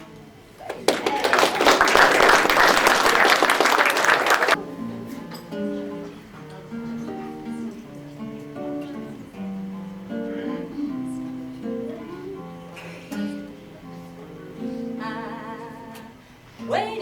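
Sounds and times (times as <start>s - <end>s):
acoustic guitar chords: 4.6s - 17.0s
person singing: 10.3s - 12.6s, 14.6s - 17.0s.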